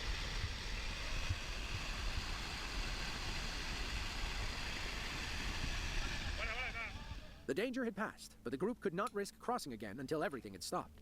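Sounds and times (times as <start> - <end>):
mudslide rushing down channel: 0.0 - 7.4.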